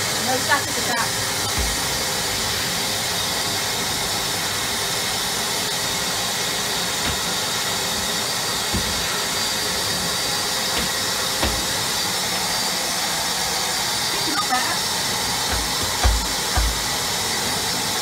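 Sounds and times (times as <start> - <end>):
vacuum cleaner running: 0.0 - 18.0
nozzle thumps: 8.6 - 9.2.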